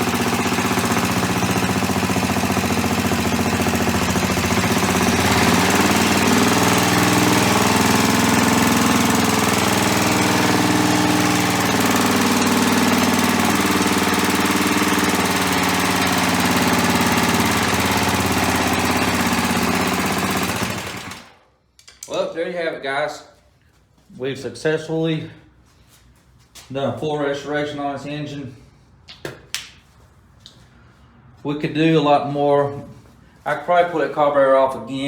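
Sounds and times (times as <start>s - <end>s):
small engine idling fast: 0.0s - 21.4s.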